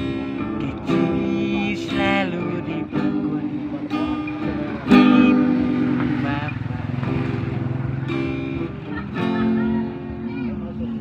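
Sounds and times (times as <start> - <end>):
acoustic guitar strumming: 0.0 - 11.0
person singing: 0.4 - 4.1.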